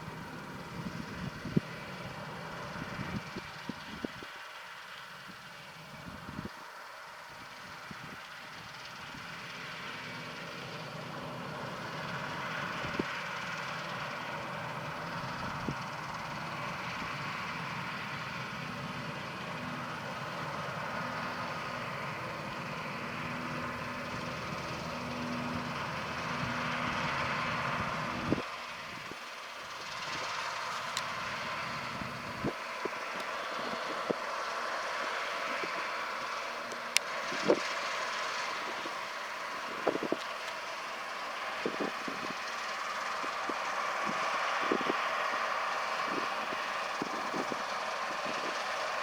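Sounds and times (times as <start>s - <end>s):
combine harvester mechanical hum: 0.0s - 49.0s.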